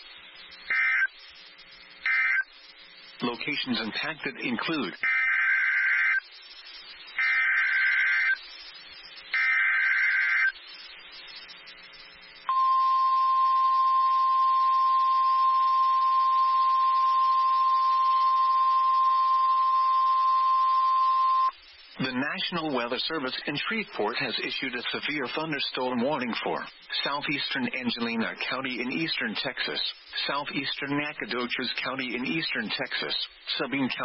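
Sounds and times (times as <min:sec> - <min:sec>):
warbling two-pitch data bursts: 0:07.1 - 0:08.4
steady warning alarm tone: 0:12.5 - 0:21.5.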